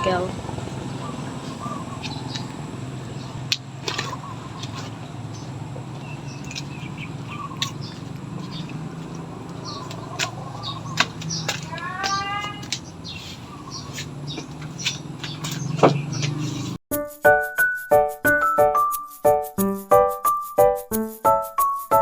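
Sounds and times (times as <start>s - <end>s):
bird-like chirps: 0.0s - 16.8s
low motor hum: 0.0s - 16.8s.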